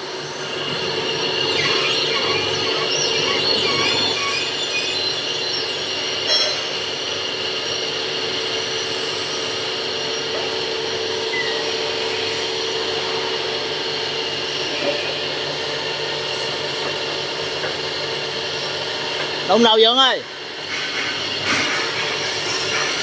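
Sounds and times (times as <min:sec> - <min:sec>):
hydraulic machine whine: 0:00.0 - 0:23.0
hydraulic hiss: 0:08.4 - 0:10.6, 0:20.6 - 0:23.0.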